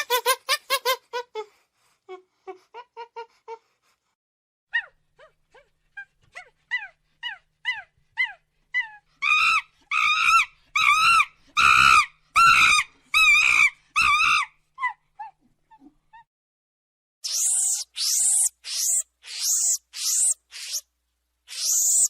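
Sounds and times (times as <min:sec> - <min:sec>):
monkey calling: 0:17.2 - 0:20.8, 0:21.5 - 0:22.0.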